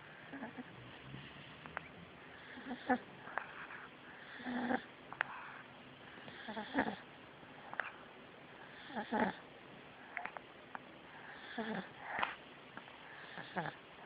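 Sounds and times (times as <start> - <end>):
cat snoring: 0.0 - 1.5, 2.3 - 3.2, 4.2 - 4.9, 6.3 - 7.0, 8.7 - 9.4, 11.3 - 12.0, 13.1 - 13.8.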